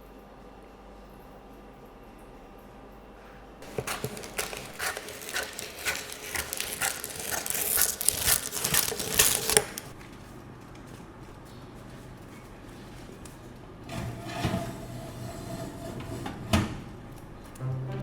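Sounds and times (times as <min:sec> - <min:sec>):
bread crust crackling: 0:03.6 - 0:10.2.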